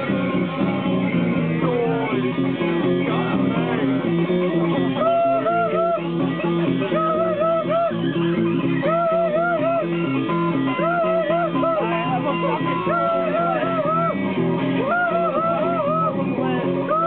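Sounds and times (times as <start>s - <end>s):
low plucked guitar notes: 0.0s - 17.0s
wavering guitar melody: 0.0s - 17.0s.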